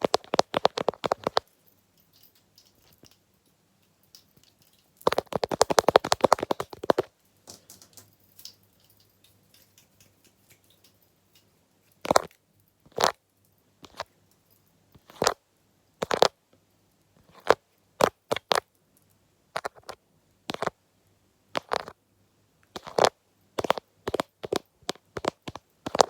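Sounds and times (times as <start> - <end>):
scratchy tapping: 4.2 - 8.6.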